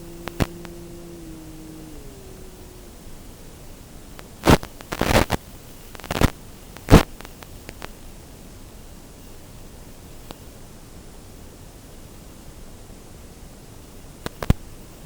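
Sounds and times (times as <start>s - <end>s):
sharp crackling bumps: 0.0s - 3.4s, 4.2s - 5.4s, 6.0s - 7.4s
electric motor whine: 0.0s - 4.9s
steady hiss: 0.0s - 12.5s.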